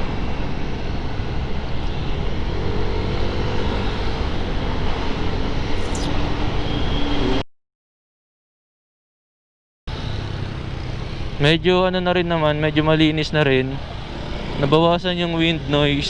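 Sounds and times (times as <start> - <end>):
scooter engine hum: 0.0 - 6.7, 9.9 - 16.0.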